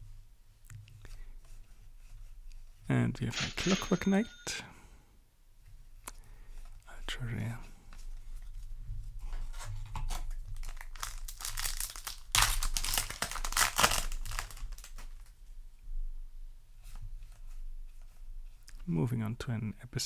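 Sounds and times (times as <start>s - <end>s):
cards handled: 10.0s - 15.2s
plastic wrapper tearing and crinkling: 10.0s - 15.3s.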